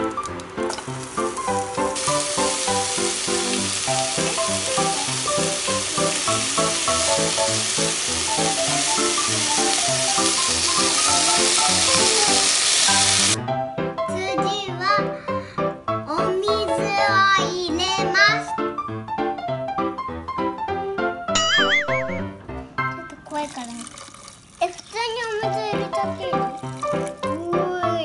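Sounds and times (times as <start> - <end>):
vegetables sizzling in a pan: 0.0 - 13.4, 25.4 - 27.3
background music: 0.0 - 23.3, 25.4 - 28.0.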